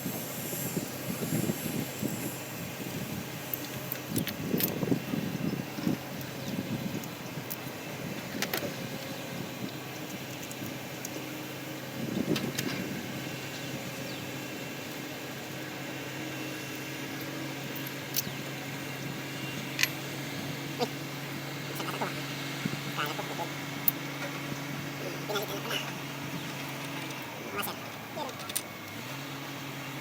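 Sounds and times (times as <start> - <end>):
low machine hum: 0.0 - 30.0.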